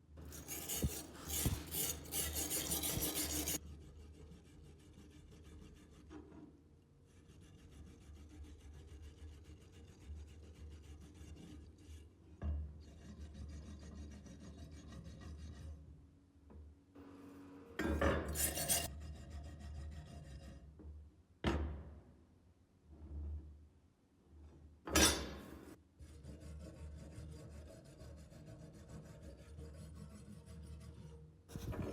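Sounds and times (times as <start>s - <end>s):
abrasive tool scraping blade: 0.2s - 3.6s, 17.8s - 20.6s, 29.6s - 31.9s.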